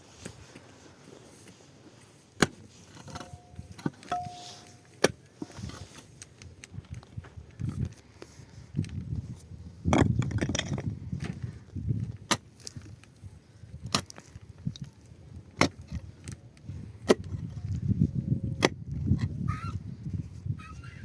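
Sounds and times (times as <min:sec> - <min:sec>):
low scuffling and rustling: 0:00.0 - 0:09.5.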